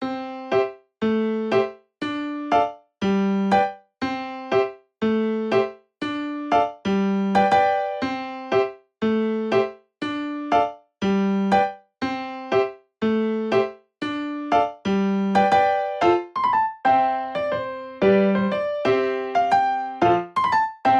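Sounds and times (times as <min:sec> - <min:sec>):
light electric-piano tune: 0:00.0 - 0:20.9.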